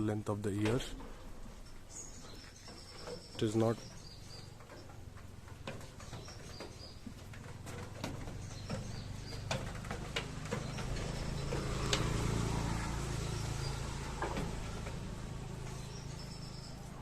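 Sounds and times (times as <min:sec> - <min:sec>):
low engine-like hum: 0:06.7 - 0:17.0.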